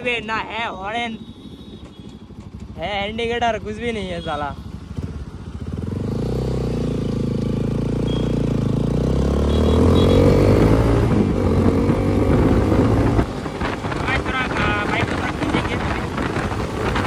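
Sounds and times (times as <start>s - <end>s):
motorcycle engine accelerating: 4.7s - 17.0s.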